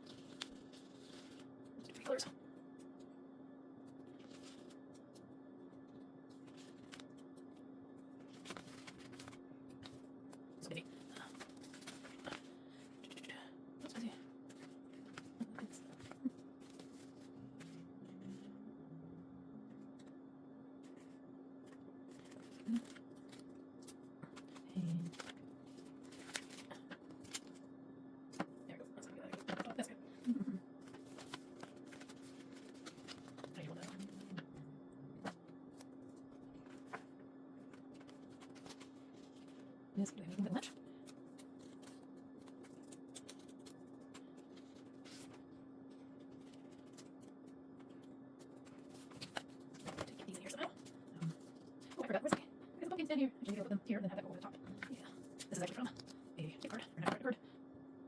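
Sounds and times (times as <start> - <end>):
paper rustling: 0.0 - 2.2, 4.0 - 5.2, 6.3 - 10.1, 10.7 - 13.2, 13.8 - 18.5, 20.8 - 27.6, 28.3 - 34.6, 35.2 - 52.4
steady low hum: 0.0 - 58.0.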